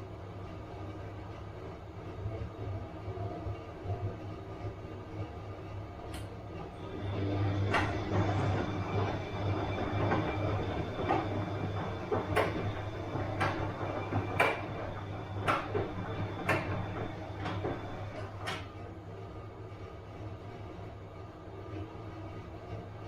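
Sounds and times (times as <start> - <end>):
washing machine motor humming: 4.4 - 19.2
washing machine drum knocking: 7.0 - 18.7.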